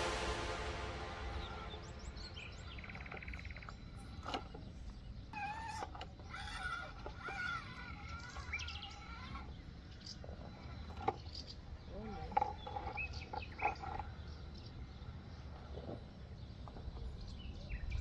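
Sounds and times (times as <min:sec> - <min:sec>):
low outdoor rumble: 0:00.0 - 0:05.3
birds chirping: 0:00.0 - 0:18.0.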